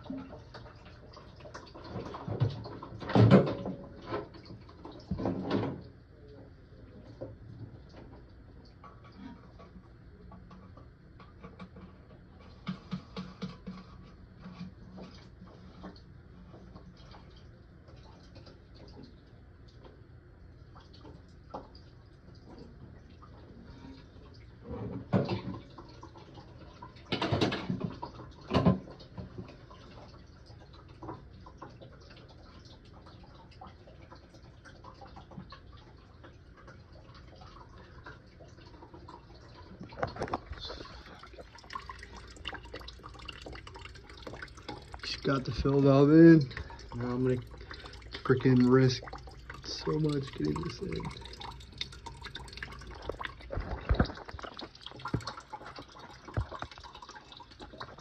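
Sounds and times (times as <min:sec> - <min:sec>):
water dripping: 0:27.8 - 0:58.0.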